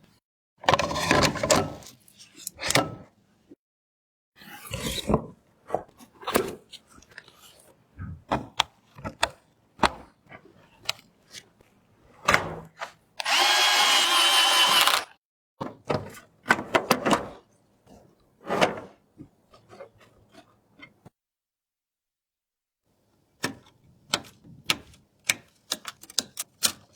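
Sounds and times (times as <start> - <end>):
electric screwdriver running: 13.2 - 15.1
computer parts clicking and knocking: 23.4 - 26.9.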